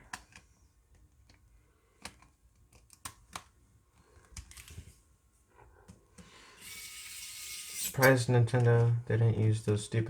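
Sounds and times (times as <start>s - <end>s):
small plastic parts clicking: 0.0s - 1.4s, 2.0s - 3.5s.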